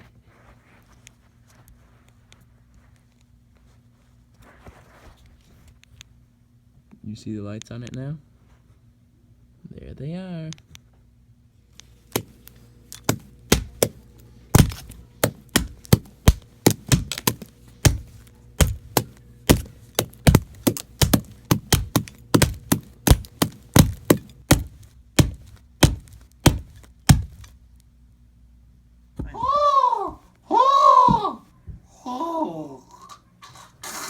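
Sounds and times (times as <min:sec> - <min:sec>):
hard knocks on a flip phone: 0:12.9 - 0:14.0, 0:14.6 - 0:27.5.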